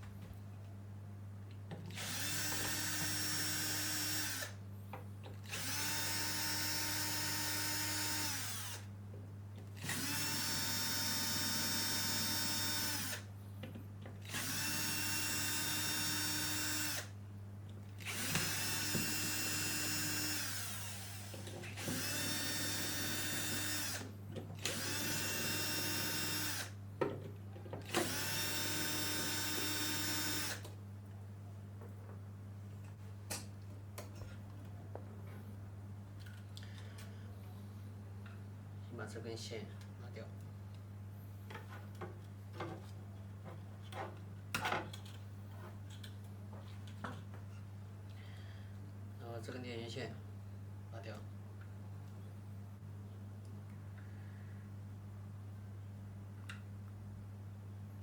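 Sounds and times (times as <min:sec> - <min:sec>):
power drill whining: 0:01.9 - 0:04.6, 0:05.4 - 0:08.9, 0:09.8 - 0:13.3, 0:14.3 - 0:17.1, 0:18.0 - 0:26.8, 0:27.9 - 0:30.7.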